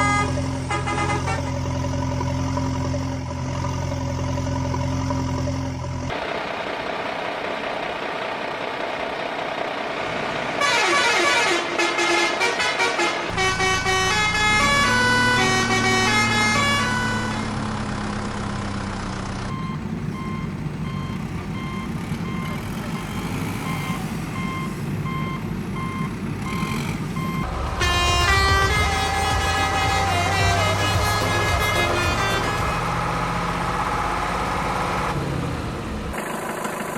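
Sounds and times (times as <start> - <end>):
melodic vehicle horn: 0.0 - 1.8, 10.6 - 17.6, 27.4 - 33.8
engine running: 0.0 - 10.6, 13.3 - 36.9
reversing beeps: 19.5 - 27.5.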